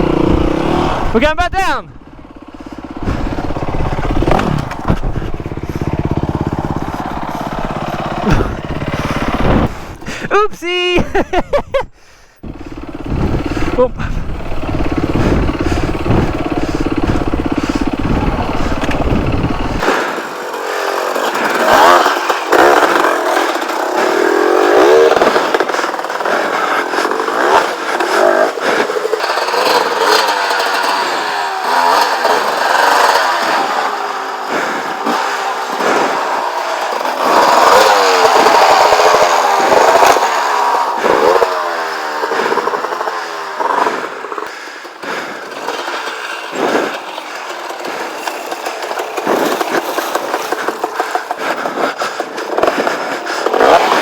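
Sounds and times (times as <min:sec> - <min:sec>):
motorcycle engines revving: 0:00.0 - 0:10.3, 0:12.4 - 0:54.0
deep low rumble: 0:01.9 - 0:09.9.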